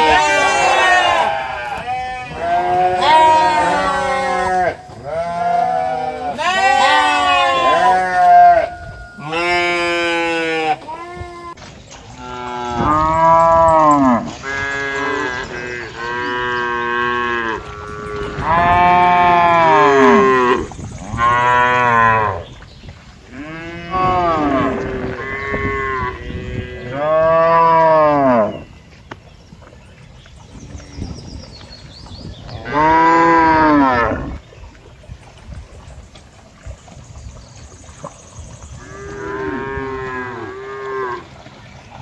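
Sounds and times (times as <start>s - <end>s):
cattle mooing: 0.0s - 11.5s, 12.2s - 22.4s, 23.3s - 28.6s, 32.6s - 34.4s, 38.8s - 41.2s.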